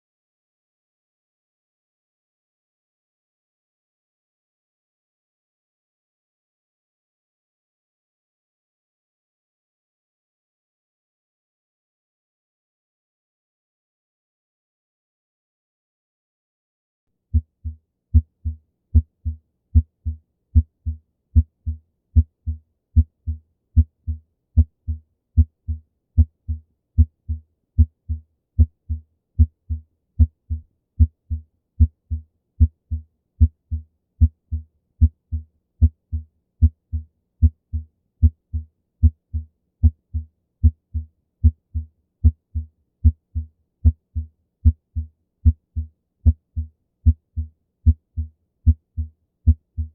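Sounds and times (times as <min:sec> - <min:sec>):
heartbeat through stethoscope: 0:17.3 - 0:49.9.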